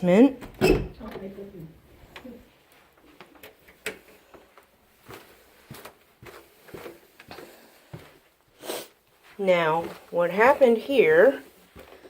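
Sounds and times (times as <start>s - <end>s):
footsteps going down stairs: 2.1s - 12.0s.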